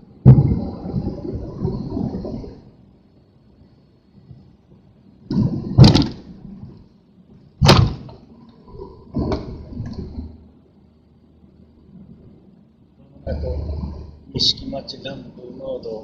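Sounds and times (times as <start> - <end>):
loud thumps: 5.3 - 6.3, 7.6 - 8.2.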